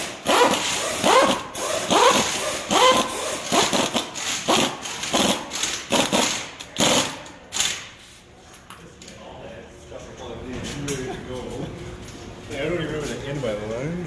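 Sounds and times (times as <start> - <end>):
pneumatic impact wrench bursts: 0.0 - 7.9.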